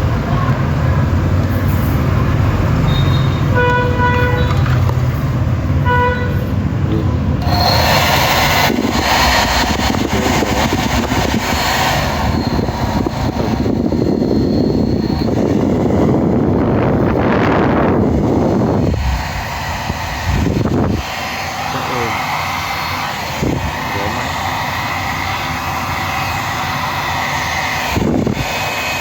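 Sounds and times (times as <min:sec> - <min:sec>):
street traffic noise: 0:00.0 - 0:28.8
car horn honks: 0:02.9 - 0:04.7, 0:05.8 - 0:06.5
loud rushing hiss: 0:07.2 - 0:29.0.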